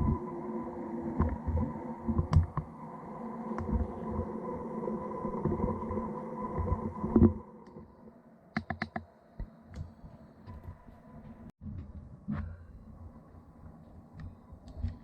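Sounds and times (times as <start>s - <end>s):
sharp clicks: 8.6s - 9.1s.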